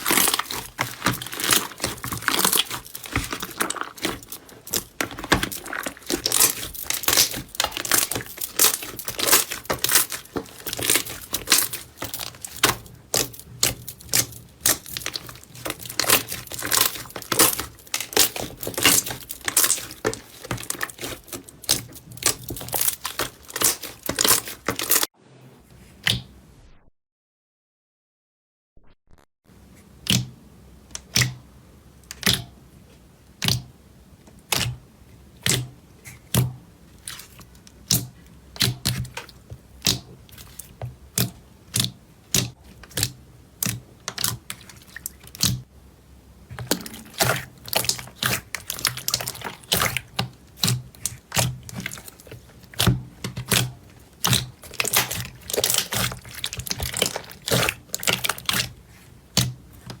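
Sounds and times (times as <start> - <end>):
slime popping and crackling: 0.0 - 25.1, 46.5 - 60.0.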